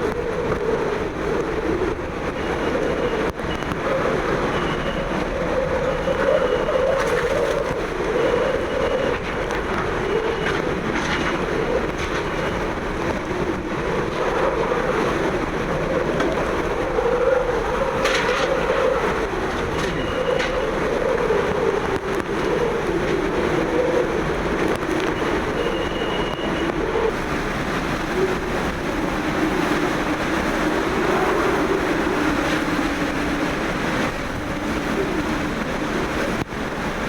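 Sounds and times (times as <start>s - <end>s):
hurricane wind blowing hard: 0.0s - 37.0s
faint high whistle: 25.6s - 26.7s.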